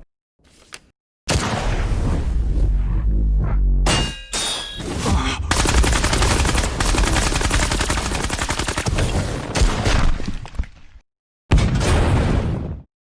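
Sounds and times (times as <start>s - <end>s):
rapid gunfire-like blasts: 5.5s - 9.9s.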